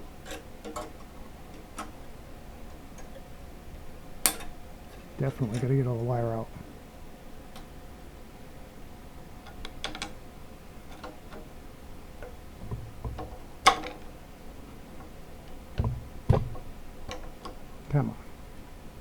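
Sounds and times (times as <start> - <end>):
hand tools clicking on metal: 0.2 - 2.0, 4.2 - 4.6
dull knocks: 12.6 - 13.8, 15.7 - 17.2.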